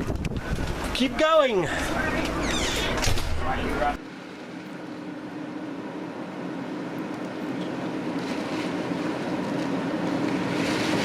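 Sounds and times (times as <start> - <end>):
storm wind buffeting a motorhome: 0.0 - 1.2.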